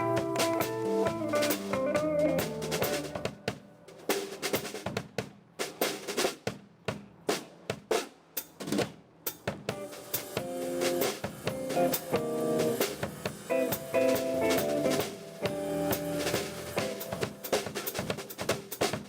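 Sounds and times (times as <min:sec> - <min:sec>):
guitar playing: 0:00.0 - 0:03.2, 0:11.5 - 0:17.4
drum kit solo: 0:00.0 - 0:19.0.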